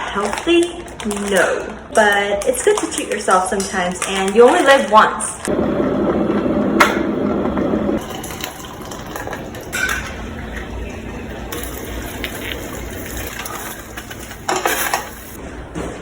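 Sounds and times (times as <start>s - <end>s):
liquid pouring: 5.5s - 14.5s
utensils clinking against pot: 8.0s - 15.4s.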